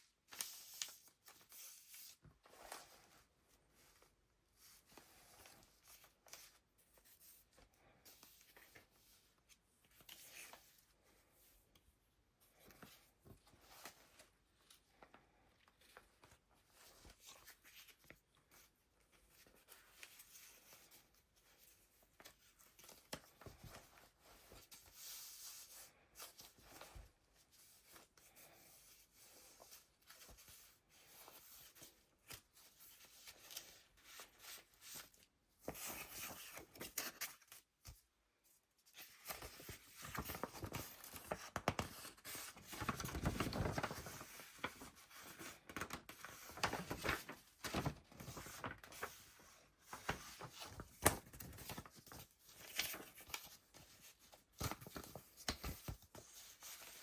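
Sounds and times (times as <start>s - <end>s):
paper pages rustling: 0.2s - 11.5s, 38.8s - 57.0s.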